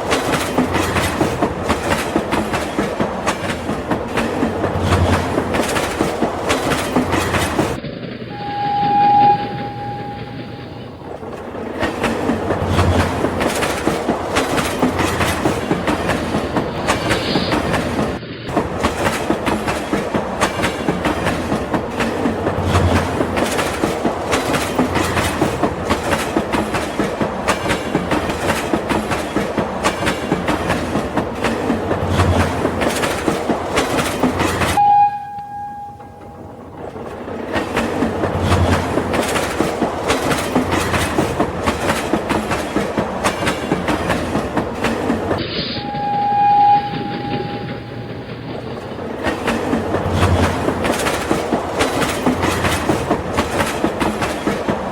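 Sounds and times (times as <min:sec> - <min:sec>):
horn beep: 0:08.3 - 0:11.0, 0:34.8 - 0:36.4, 0:45.6 - 0:48.1.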